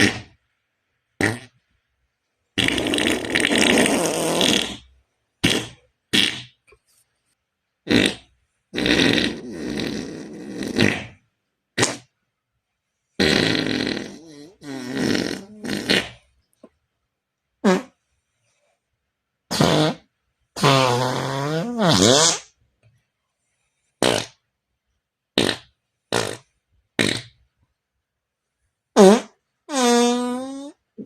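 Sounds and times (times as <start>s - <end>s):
imitation fart sounds: 0.0s - 0.4s, 1.2s - 1.6s, 2.6s - 6.7s, 7.8s - 12.2s, 13.2s - 16.3s, 17.6s - 18.0s, 19.5s - 22.6s, 24.0s - 24.5s, 25.4s - 27.5s, 28.9s - 31.0s.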